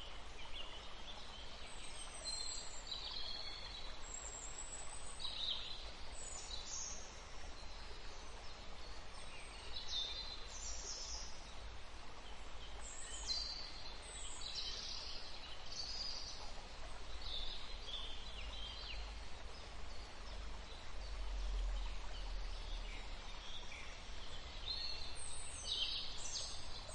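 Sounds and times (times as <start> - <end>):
faint background hiss: 0.0 - 26.9.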